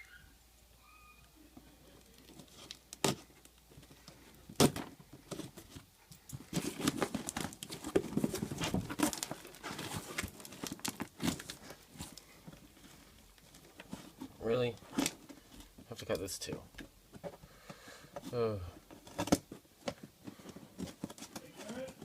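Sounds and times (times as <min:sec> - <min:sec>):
cardboard scratching and tearing: 0:06.5 - 0:11.8.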